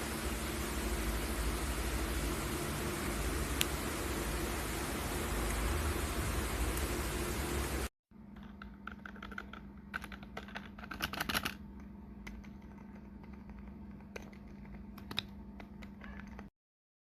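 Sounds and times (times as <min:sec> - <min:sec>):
loud hiss: 0:00.0 - 0:07.9
steady low hum: 0:00.0 - 0:08.8.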